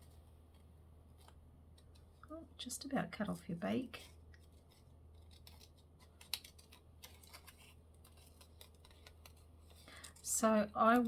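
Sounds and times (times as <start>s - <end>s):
low steady hum: 0.0s - 11.0s
scissors snipping paper: 5.2s - 11.0s.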